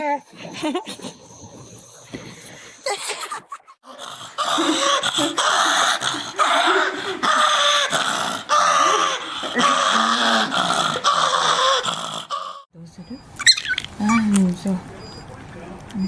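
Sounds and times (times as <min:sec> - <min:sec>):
dog making long wavering calls: 0:04.3 - 0:12.7.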